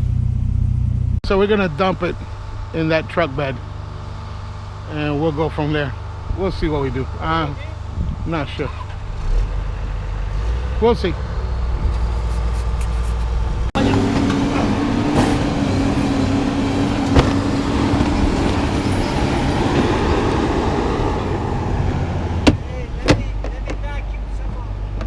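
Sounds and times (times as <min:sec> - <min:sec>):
road noise: 0:00.0 - 0:25.0
vehicle engine hum: 0:00.0 - 0:25.0
sharp knocks or clicks: 0:22.4 - 0:23.8.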